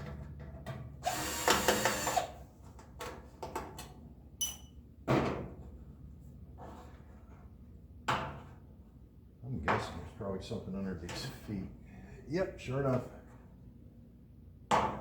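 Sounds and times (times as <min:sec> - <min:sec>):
short ringing clink: 0:04.4 - 0:04.7.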